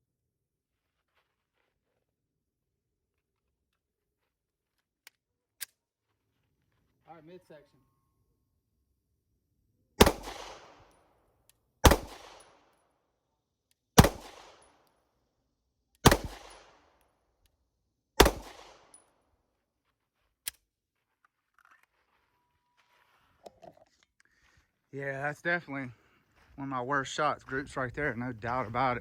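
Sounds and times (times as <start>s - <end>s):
pistol shots with echo: 10.0s - 11.0s, 11.8s - 12.6s, 14.0s - 14.8s, 16.0s - 16.8s, 18.2s - 19.0s.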